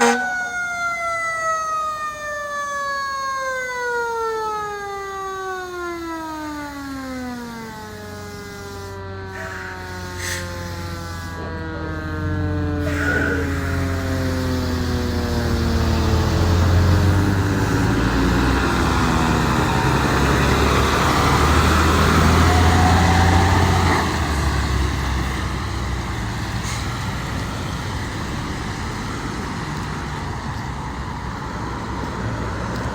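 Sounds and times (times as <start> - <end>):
fire engine siren winding down: 0.0 - 32.0
heavy diesel engine rumble: 9.3 - 32.9.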